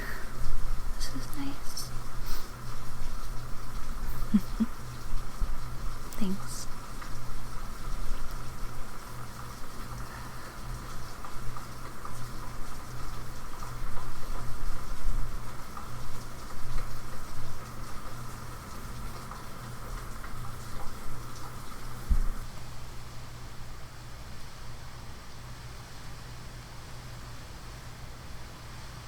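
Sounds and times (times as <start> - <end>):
steady rain falling: 0.0 - 29.0.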